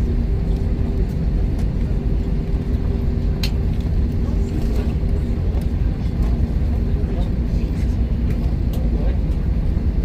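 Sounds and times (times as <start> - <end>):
jet engines idling rumble: 0.0 - 10.0
steady cabin hum: 0.0 - 10.0.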